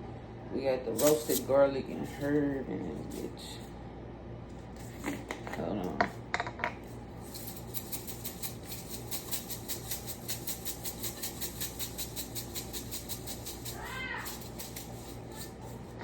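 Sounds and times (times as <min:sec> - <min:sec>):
seasoning shaker rattling: 0:00.9 - 0:01.5, 0:07.2 - 0:16.0.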